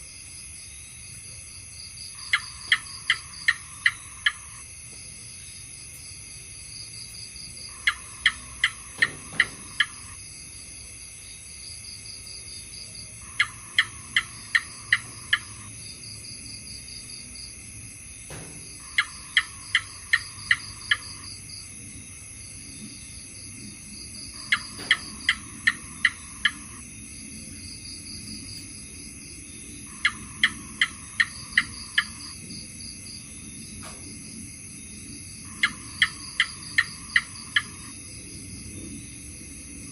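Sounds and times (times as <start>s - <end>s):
gecko chirping: 2.1s - 4.6s, 7.6s - 10.2s, 13.2s - 15.7s, 18.3s - 21.4s, 24.2s - 26.8s, 29.9s - 32.4s, 35.4s - 38.0s
high-pitched background drone: 22.6s - 29.1s.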